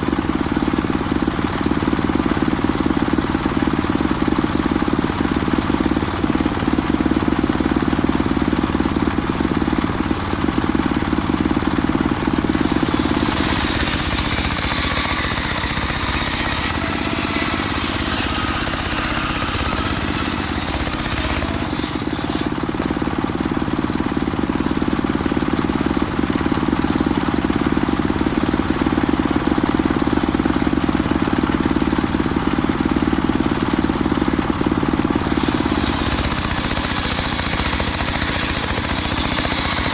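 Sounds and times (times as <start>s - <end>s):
engine-driven circular saw running: 0.0s - 39.9s
saw blade cutting wood: 12.4s - 22.8s, 35.2s - 39.9s.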